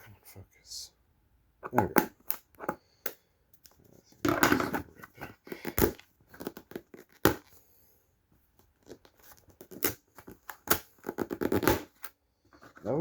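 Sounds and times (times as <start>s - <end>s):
packaging crinkling and tearing: 5.4s - 7.6s, 8.8s - 12.1s.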